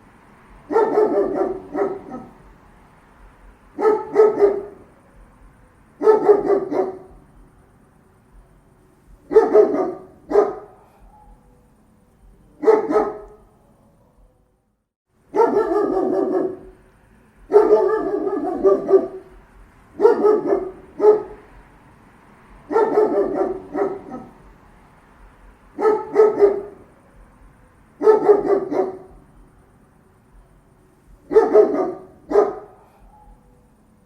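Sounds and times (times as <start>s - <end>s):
dog barking: 0.6s - 2.5s, 3.6s - 5.2s, 6.0s - 7.4s, 9.1s - 11.7s, 12.5s - 14.5s, 15.3s - 16.8s, 17.4s - 21.7s, 22.6s - 24.5s, 25.6s - 29.4s, 31.1s - 33.8s.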